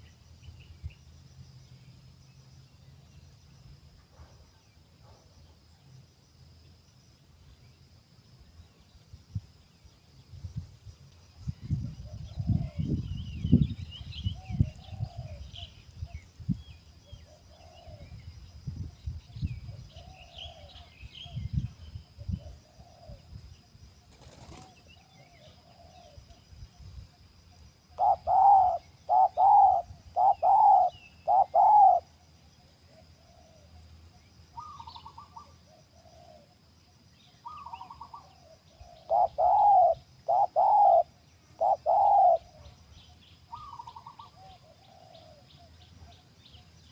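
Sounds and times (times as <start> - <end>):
doves cooing: 17.3 - 18.0, 20.0 - 20.8, 22.4 - 23.2, 24.1 - 26.2, 28.0 - 32.1, 37.5 - 42.7, 43.5 - 45.5.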